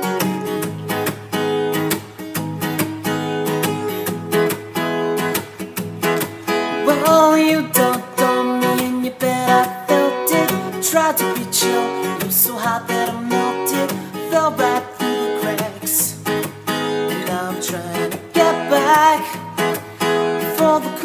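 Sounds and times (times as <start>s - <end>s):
strummed acoustic guitar music: 0.0s - 21.0s
person singing: 6.7s - 16.4s, 17.1s - 21.0s.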